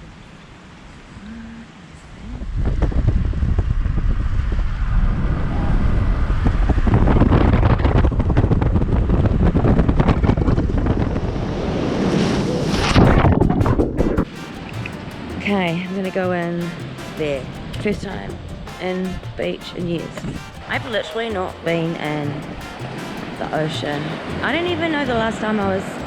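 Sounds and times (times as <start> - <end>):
wind buffeting microphone: 2.1 - 14.3
surf rushing: 10.2 - 26.0.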